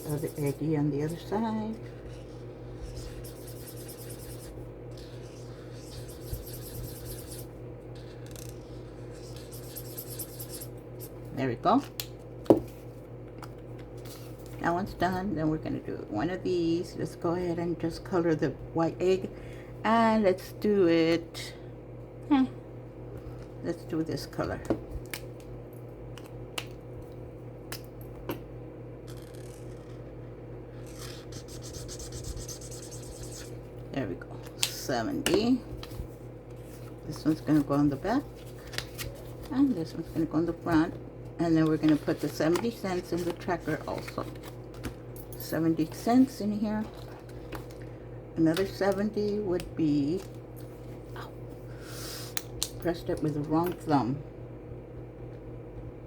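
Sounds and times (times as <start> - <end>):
coloring tool scribbling on paper: 0.0 - 0.7, 2.3 - 7.4, 9.2 - 10.7, 30.9 - 33.5
steady low hum: 0.0 - 56.0.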